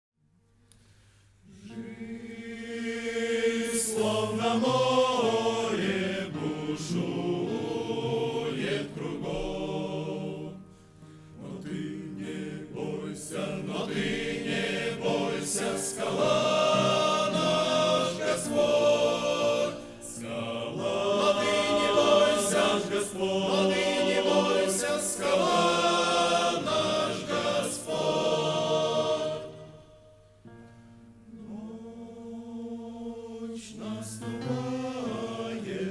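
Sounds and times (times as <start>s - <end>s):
choir singing: 1.4s - 30.2s, 31.2s - 35.9s.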